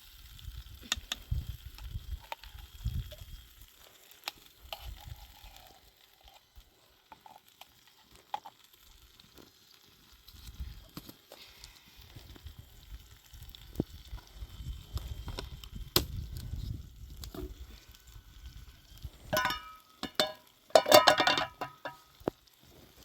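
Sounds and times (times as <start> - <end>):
metal objects clinking: 19.3 - 22.1.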